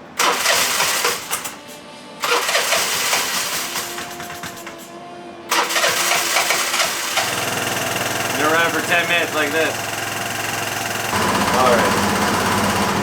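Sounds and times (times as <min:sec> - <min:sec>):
scooter engine starting and running: 0:00.2 - 0:13.0.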